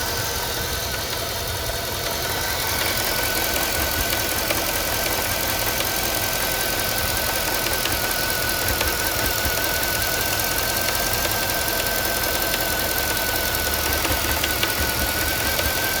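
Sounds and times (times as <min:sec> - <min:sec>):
car engine idling with whine: 0:00.0 - 0:16.0
engine rattle and ticks: 0:00.0 - 0:16.0.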